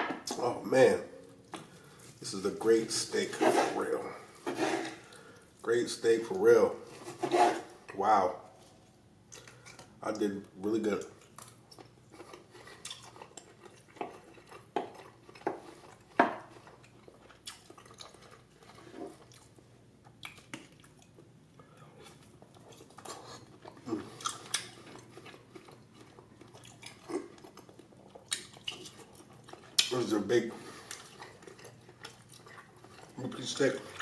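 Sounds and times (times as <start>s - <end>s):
cutlery scraping a plate: 3.3s - 3.8s, 4.4s - 5.0s, 7.0s - 7.7s
chewing: 8.6s - 34.0s.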